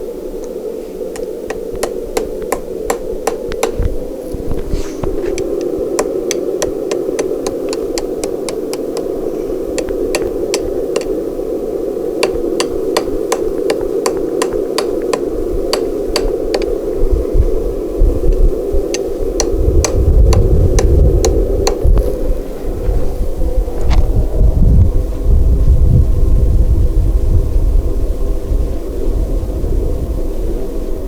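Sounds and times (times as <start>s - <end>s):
steady background noise: 0.0s - 31.0s
hammer striking steel on anvil: 1.2s - 4.0s, 5.4s - 9.1s, 9.8s - 11.1s, 12.2s - 16.7s.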